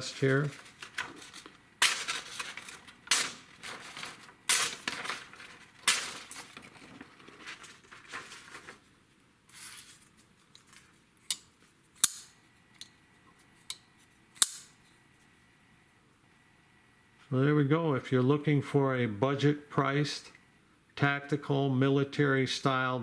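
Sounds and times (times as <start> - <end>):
knife slicing paper: 0.0 - 8.8.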